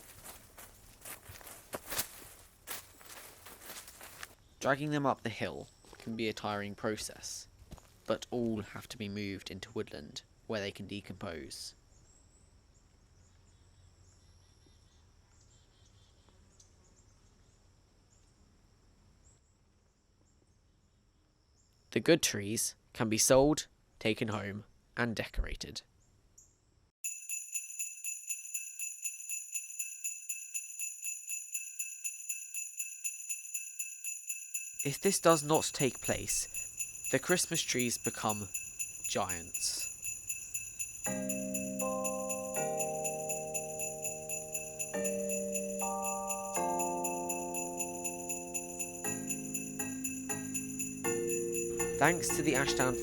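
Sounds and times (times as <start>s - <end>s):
sleigh bells jingling: 0.0s - 4.4s, 27.0s - 53.0s
held chords: 33.1s - 53.0s.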